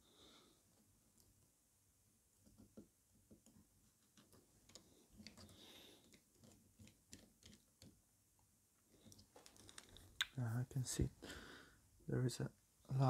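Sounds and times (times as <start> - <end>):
laptop clicks and creaks: 9.0 - 10.2.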